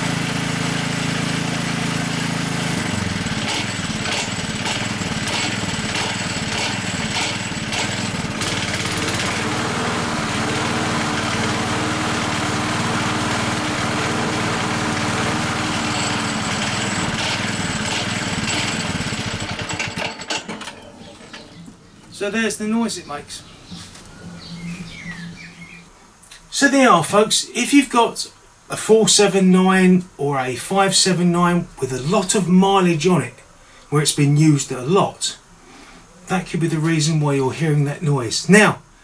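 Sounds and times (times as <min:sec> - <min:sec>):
lawn mower engine running: 0:00.0 - 0:21.3
repeated knocking of blade disc: 0:03.4 - 0:08.6.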